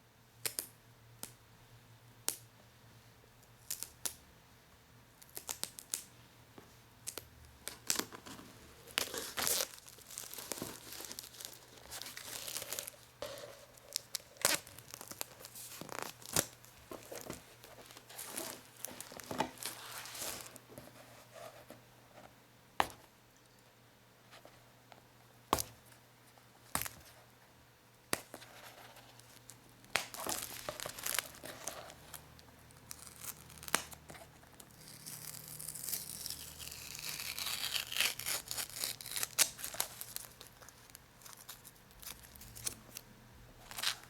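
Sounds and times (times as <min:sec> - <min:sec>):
sticky sheet peeling and crinkling: 0:07.1 - 0:20.6, 0:29.1 - 0:43.0.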